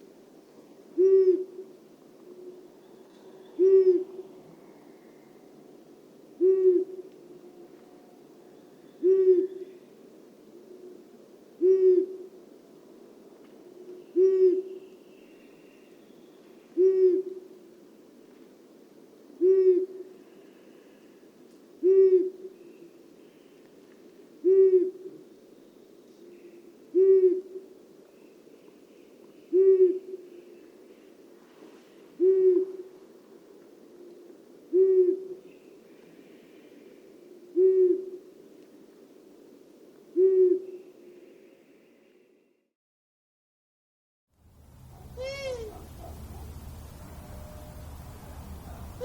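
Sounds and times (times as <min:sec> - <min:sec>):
owl hooting: 0:01.0 - 0:04.2, 0:06.4 - 0:08.2, 0:08.8 - 0:09.9, 0:11.6 - 0:12.4, 0:13.8 - 0:16.0, 0:16.7 - 0:17.6, 0:19.4 - 0:21.1, 0:21.8 - 0:23.5, 0:24.4 - 0:25.2, 0:26.2 - 0:27.7, 0:29.4 - 0:30.8, 0:32.2 - 0:33.0, 0:34.0 - 0:38.4, 0:40.1 - 0:41.8, 0:44.9 - 0:46.5.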